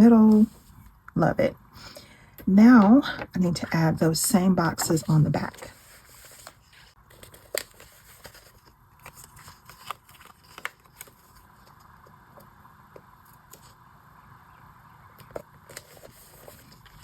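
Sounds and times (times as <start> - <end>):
paper rustling and peeling: 4.7 - 11.8, 15.3 - 17.0.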